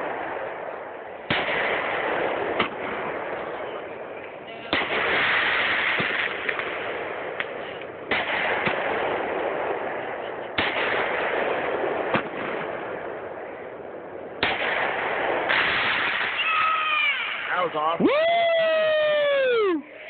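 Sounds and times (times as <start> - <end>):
fireworks bangs: 0.0 - 20.0
small firework pops: 4.2 - 9.0, 10.5 - 12.7, 14.4 - 17.2.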